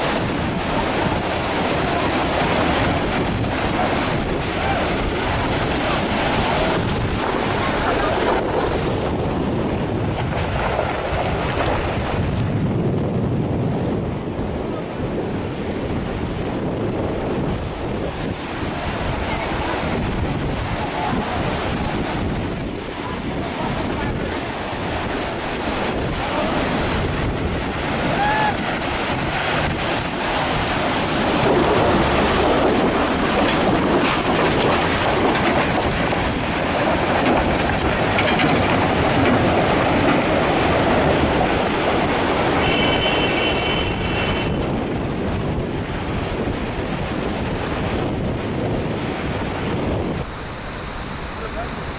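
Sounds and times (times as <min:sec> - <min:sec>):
stream rushing across road: 0:00.0 - 0:51.9
wind buffeting microphone: 0:00.0 - 0:51.9.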